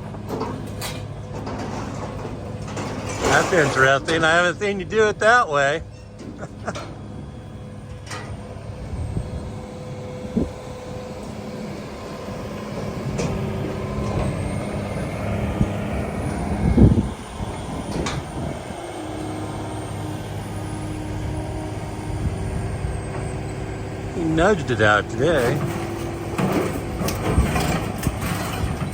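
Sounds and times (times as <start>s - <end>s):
heavy machine engine running: 0.0s - 28.9s
loud metal clank: 0.3s - 4.4s.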